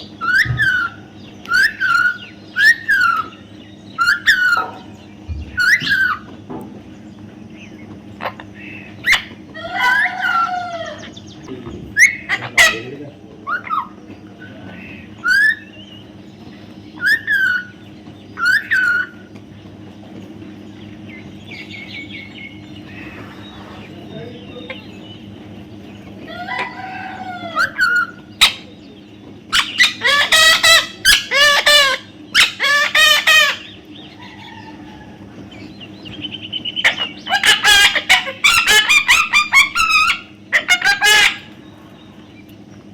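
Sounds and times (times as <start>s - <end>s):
parrot squawking and screeching: 0.0s - 3.4s, 4.0s - 4.9s, 5.6s - 6.3s, 9.0s - 11.1s, 11.9s - 14.0s, 15.2s - 15.7s, 17.0s - 17.8s, 18.4s - 19.2s, 26.3s - 28.7s, 29.5s - 35.2s, 36.8s - 41.6s.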